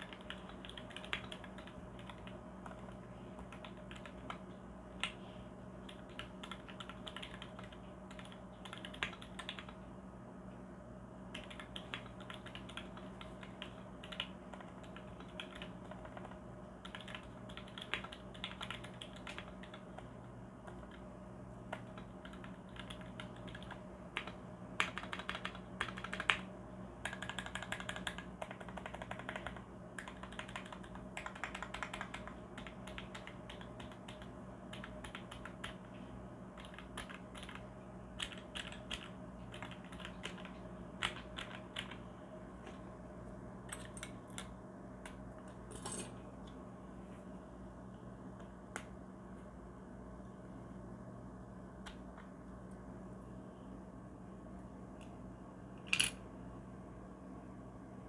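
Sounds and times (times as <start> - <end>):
mechanical keyboard keys clacking: 0.0 - 4.4, 5.9 - 9.8, 11.3 - 20.1, 21.7 - 26.4, 27.0 - 35.8, 36.6 - 37.6, 38.2 - 42.0
faint steady hum: 0.0 - 58.0.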